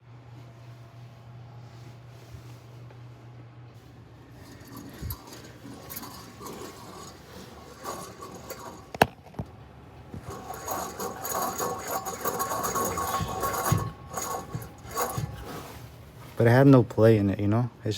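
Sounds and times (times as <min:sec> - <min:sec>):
rough gritty grinding: 0:04.2 - 0:16.8
scraping and clinking on metal: 0:04.3 - 0:09.4, 0:10.1 - 0:16.5.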